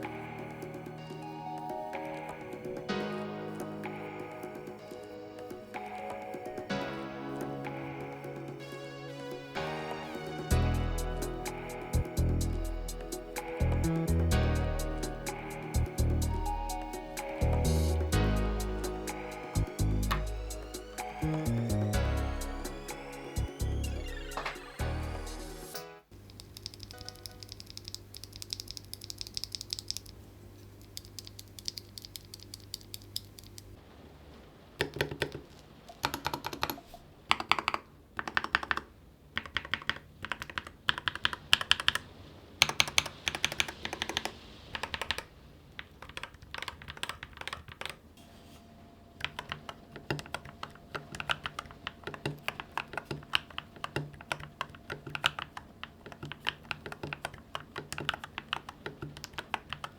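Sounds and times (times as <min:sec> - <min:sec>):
mechanical keyboard typing: 0:26.2 - 0:30.2, 0:30.8 - 0:33.8, 0:34.8 - 0:48.0, 0:49.2 - 0:59.9.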